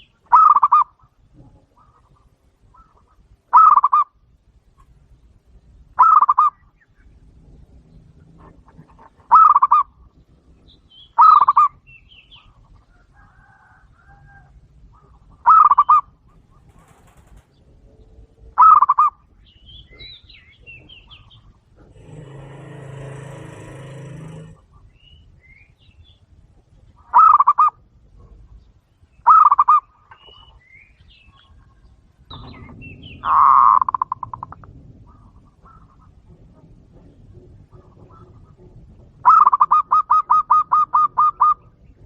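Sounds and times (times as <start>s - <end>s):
doves cooing: 0.0s - 4.9s, 8.0s - 10.4s, 11.1s - 19.4s, 20.1s - 25.1s, 26.9s - 28.4s, 32.3s - 42.0s
wings rustling and whirring: 16.3s - 17.9s.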